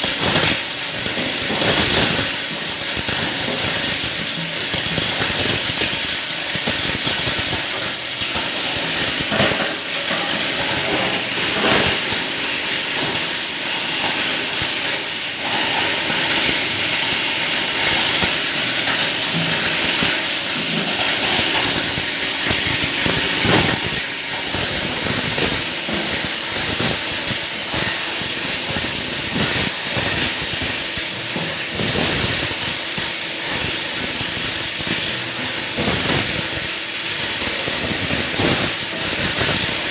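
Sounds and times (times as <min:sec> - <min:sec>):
plastic grinder chopping scrap: 0:00.0 - 0:39.9.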